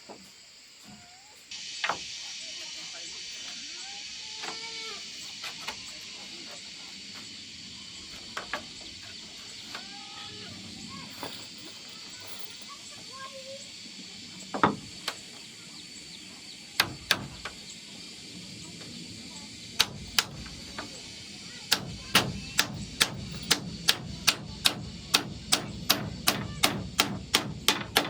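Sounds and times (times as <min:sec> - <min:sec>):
hammer blows: 0:21.7 - 0:28.0.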